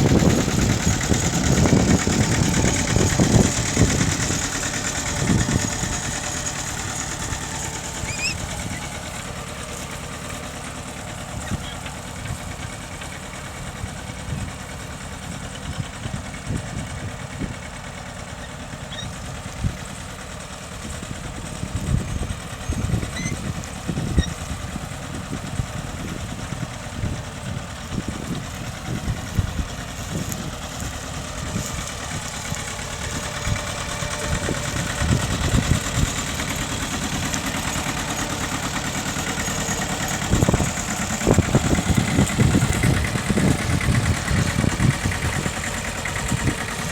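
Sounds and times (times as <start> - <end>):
tractor engine running: 0.0 - 46.9.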